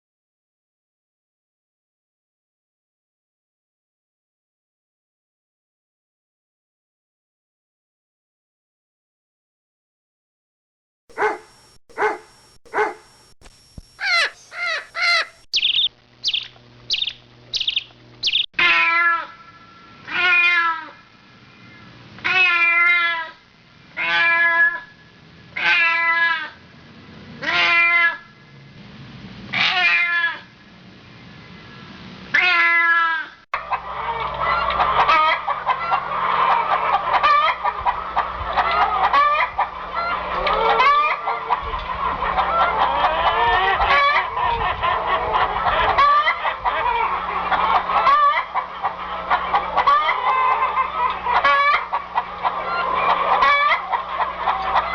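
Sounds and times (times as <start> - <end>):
flock of fowl calling: 14.0 - 21.0, 33.6 - 54.9
cats meowing: 18.6 - 19.4, 20.1 - 21.0.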